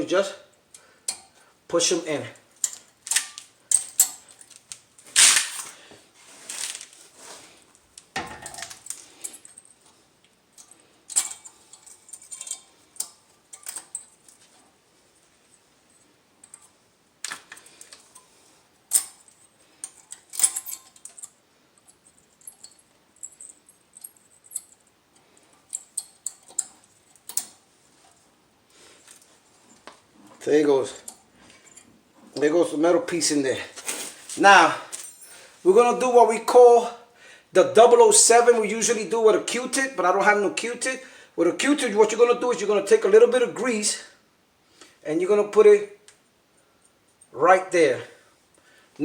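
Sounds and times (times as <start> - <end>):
metal clips clicking and clinking: 2.6 - 5.6, 10.6 - 14.4, 18.9 - 21.4.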